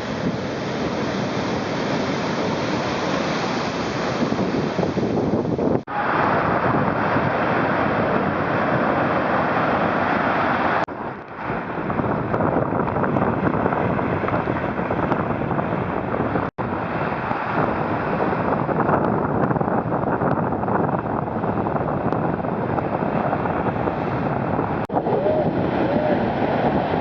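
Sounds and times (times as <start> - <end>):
surf breaking: 0.0 - 15.1, 22.9 - 27.0
wind buffeting microphone: 0.0 - 27.0.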